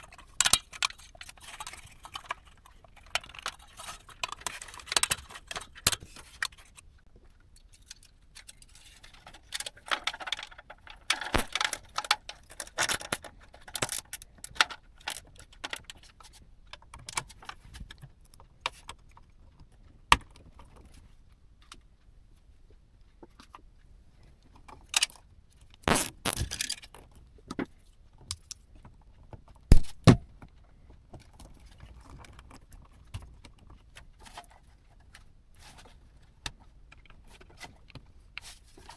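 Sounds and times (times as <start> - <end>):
metal parts clinking: 11.1 - 11.8.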